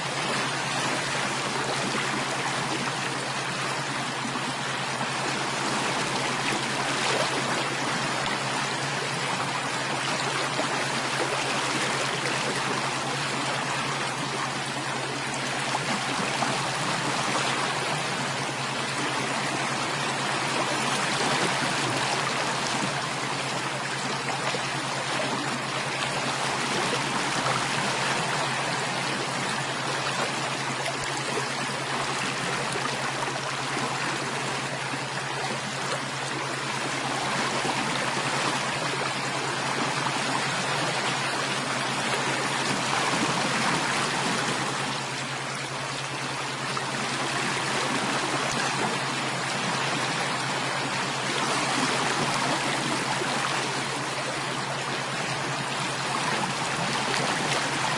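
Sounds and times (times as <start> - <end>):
stream water flowing: 0.0 - 57.9.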